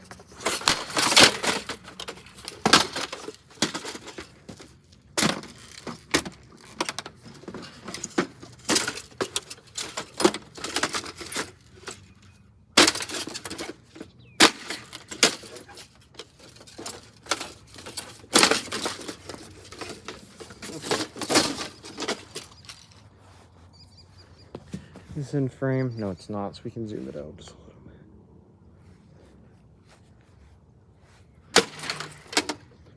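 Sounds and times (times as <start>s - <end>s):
mini fridge being smashed: 0.0s - 23.0s, 31.5s - 32.7s.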